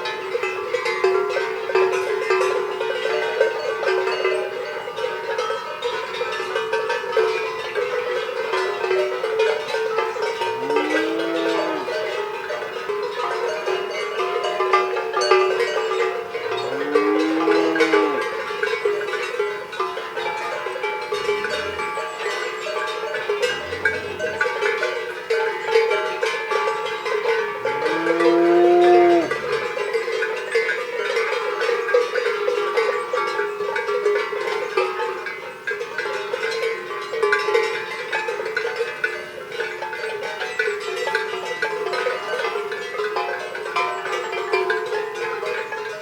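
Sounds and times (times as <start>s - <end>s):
cowbells clanking: 0.0s - 46.0s
cow mooing: 10.4s - 12.2s, 16.2s - 18.5s, 21.2s - 22.0s, 23.4s - 24.8s, 27.7s - 29.8s.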